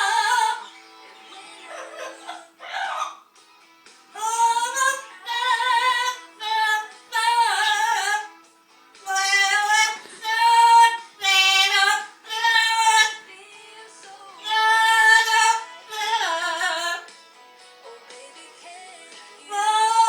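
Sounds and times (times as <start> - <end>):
parrot singing drawn-out notes: 0.0 - 3.3, 4.2 - 8.4, 9.0 - 13.2, 14.4 - 17.1, 19.5 - 20.0
background music: 0.0 - 20.0.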